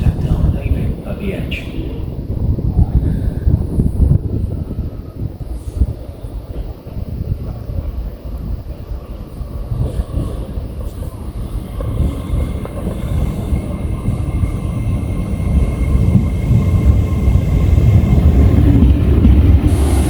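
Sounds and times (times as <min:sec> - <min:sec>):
train rumbling: 0:00.0 - 0:20.0.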